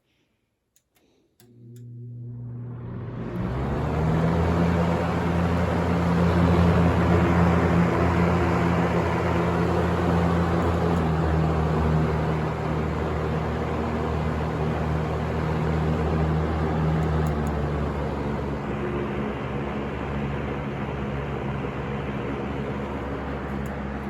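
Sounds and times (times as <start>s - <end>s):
fan motor hum: 1.4s - 24.0s
box fan blades rushing air: 2.5s - 24.0s.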